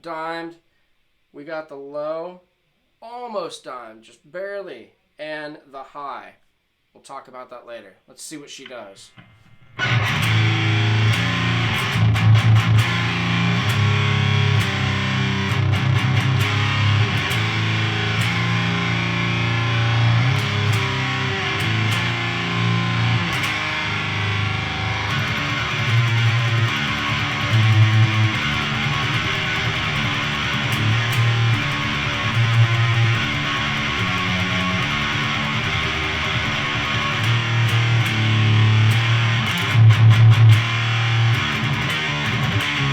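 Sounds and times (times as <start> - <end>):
distorted electric guitar riff: 9.2 - 42.9.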